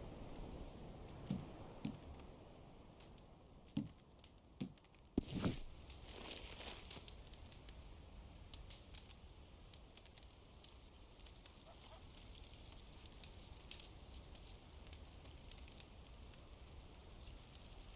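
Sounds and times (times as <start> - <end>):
campfire crackling: 0.0 - 17.9.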